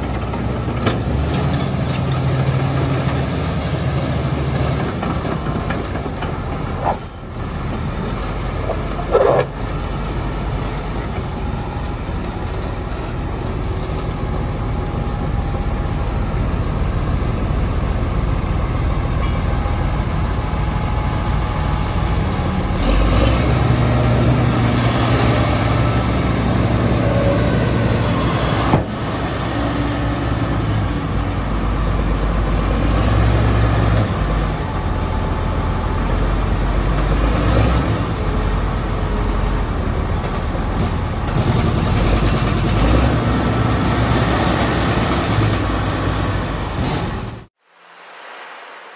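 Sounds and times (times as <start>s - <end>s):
bulldozer diesel engine running: 0.0s - 47.6s.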